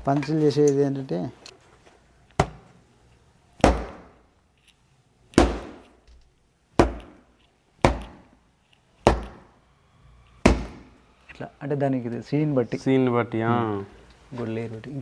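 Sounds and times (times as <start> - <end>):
heavy dull punch impacts: 3.6 - 4.2, 5.3 - 5.9, 6.8 - 7.2, 7.8 - 8.3, 9.0 - 9.5, 10.4 - 10.9.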